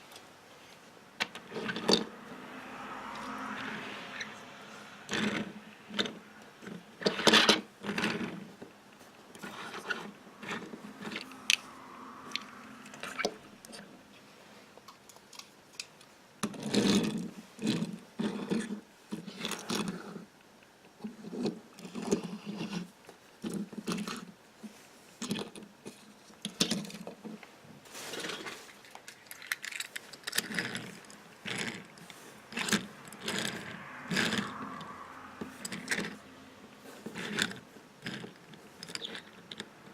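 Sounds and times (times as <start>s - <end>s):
toy cars clicking and clattering: 1.2s - 2.1s, 5.1s - 8.7s, 9.3s - 11.7s, 14.8s - 20.3s, 25.2s - 27.4s, 28.1s - 36.2s, 36.9s - 39.9s.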